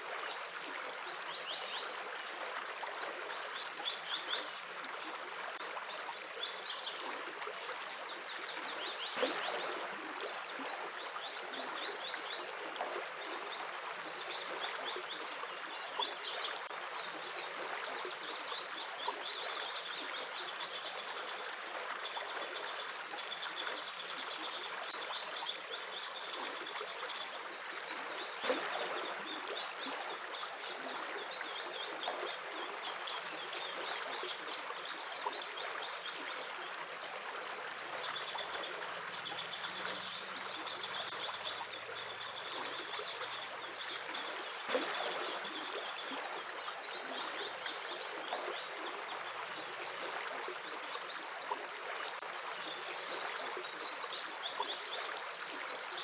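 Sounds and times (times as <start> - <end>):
running water stream: 0.0 - 56.0.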